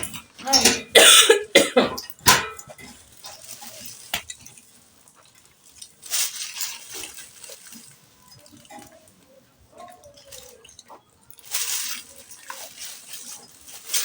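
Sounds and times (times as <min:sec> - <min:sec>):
woman coughing: 0:00.6 - 0:02.0.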